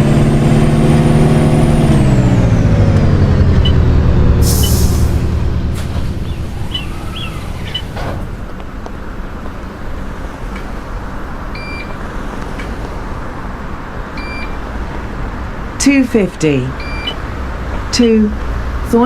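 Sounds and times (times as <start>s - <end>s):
bus engine rumble: 0.0s - 19.0s
short electronic beep: 4.5s - 5.0s, 14.2s - 14.6s, 16.8s - 17.2s.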